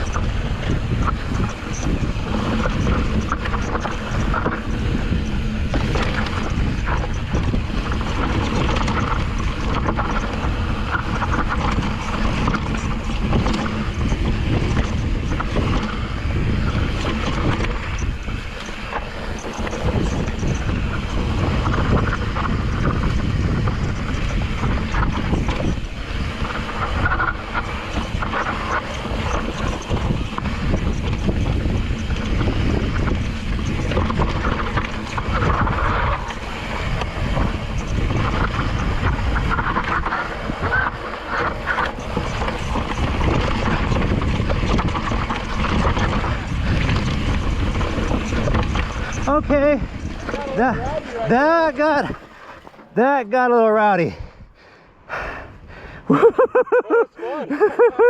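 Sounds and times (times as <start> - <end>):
bike rattling over rocky trail: 0.0 - 54.1
wind buffeting microphone: 0.0 - 56.8.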